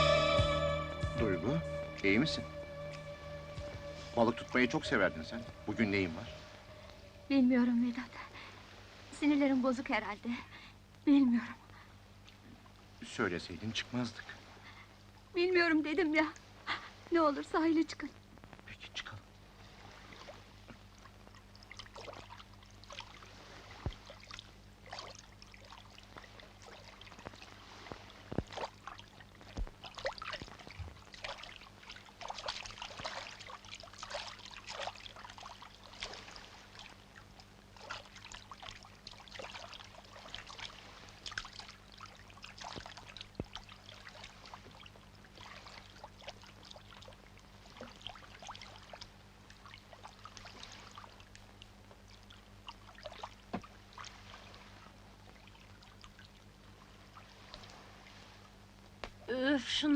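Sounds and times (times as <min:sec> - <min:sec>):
faint low hum: 0:00.0 - 0:59.9
water splashing around boat: 0:19.6 - 0:59.3.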